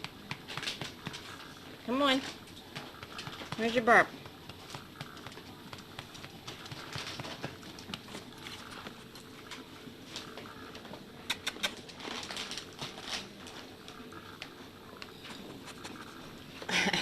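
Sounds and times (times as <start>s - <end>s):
dog's small clicks and taps: 2.6s - 8.2s, 11.2s - 12.0s.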